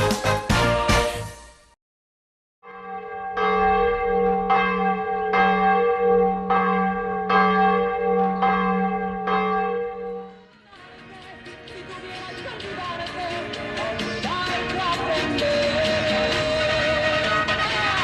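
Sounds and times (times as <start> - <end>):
bell tolling: 2.6 - 10.5.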